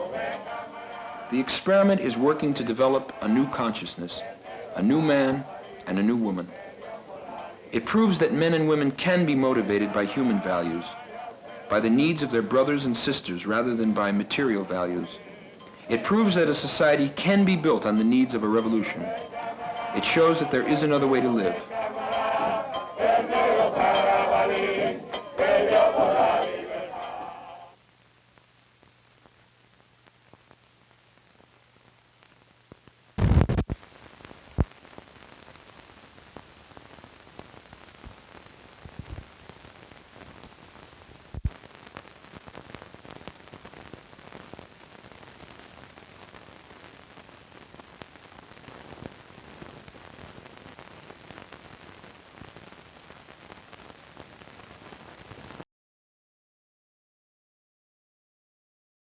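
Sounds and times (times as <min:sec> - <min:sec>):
film crackling hiss: 0:00.0 - 0:55.6
scattered pops: 0:32.2 - 0:55.6.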